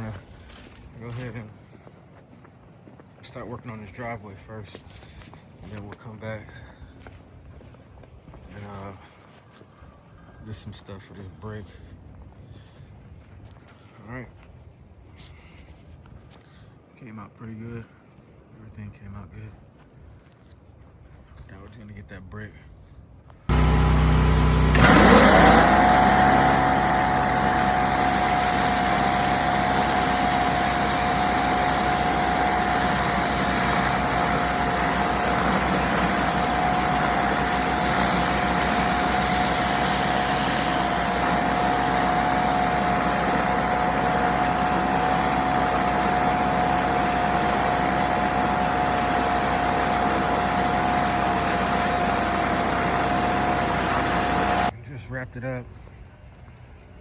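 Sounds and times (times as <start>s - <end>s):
pressure washer spraying: 23.5s - 54.7s
water jet hiss and whine: 23.5s - 54.7s.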